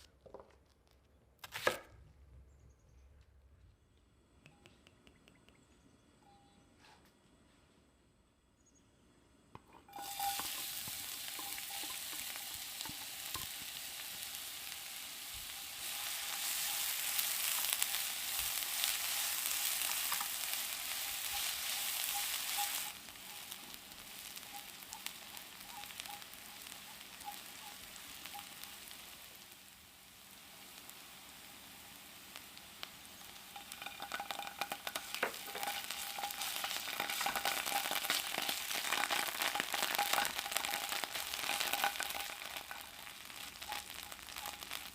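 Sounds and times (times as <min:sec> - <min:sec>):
sizzling hiss with crackles: 0:09.6 - 0:44.9.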